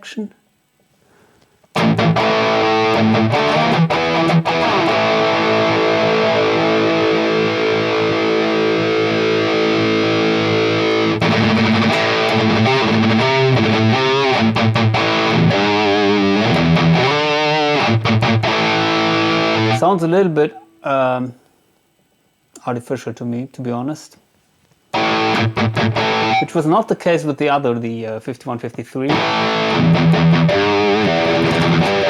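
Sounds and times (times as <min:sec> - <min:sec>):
distorted electric guitar: 0:01.7 - 0:20.8, 0:24.9 - 0:26.7, 0:29.1 - 0:32.0.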